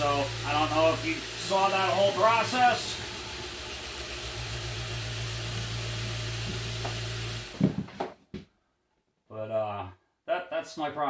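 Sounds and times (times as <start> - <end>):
vibrating table humming: 0.0 - 8.0.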